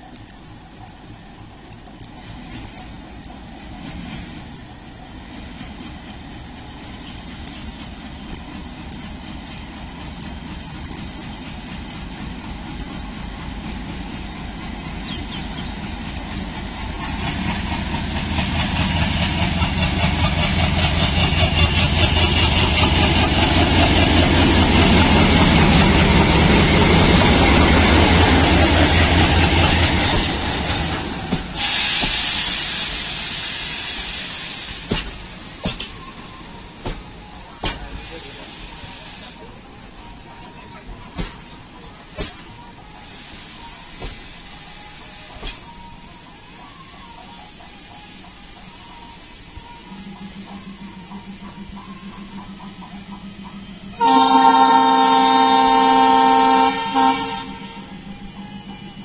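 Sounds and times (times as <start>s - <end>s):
train running past: 0.0s - 59.0s
loud hiss: 11.1s - 40.0s, 41.3s - 53.1s.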